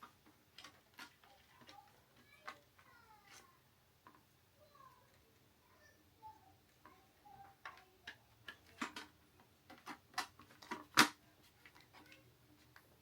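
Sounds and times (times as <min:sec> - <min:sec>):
plastic parts clicking: 0:00.0 - 0:03.4, 0:07.4 - 0:12.9.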